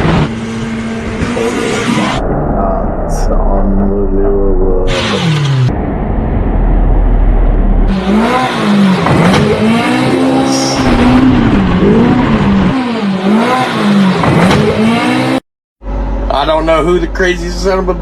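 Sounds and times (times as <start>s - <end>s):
low rough rumble: 0.8s - 8.2s, 10.6s - 12.8s
off-road vehicle engine revving: 7.6s - 18.0s.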